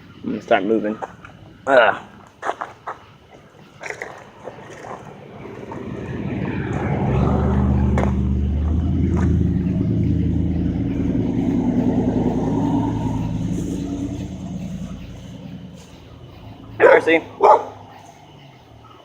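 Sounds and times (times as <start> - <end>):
car engine running: 3.6 - 18.7.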